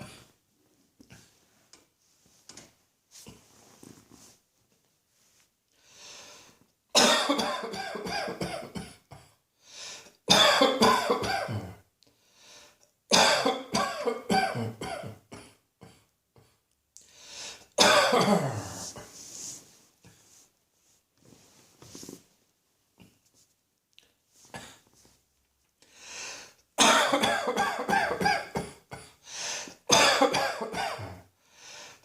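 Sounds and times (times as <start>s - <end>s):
person coughing in fits: 7.0s - 9.4s, 10.3s - 11.8s, 13.1s - 16.1s, 17.8s - 19.1s, 26.8s - 29.2s, 29.9s - 31.3s.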